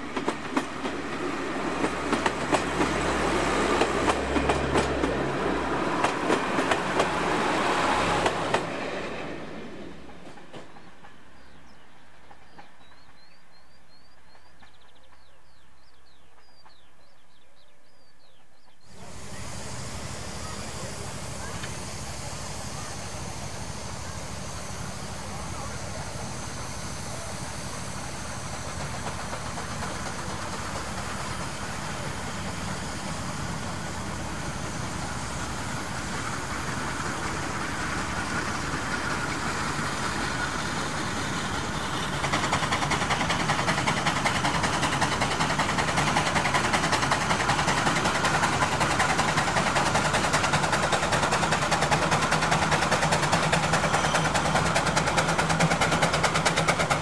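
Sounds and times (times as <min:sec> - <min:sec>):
engine running: 0:18.9 - 0:57.0.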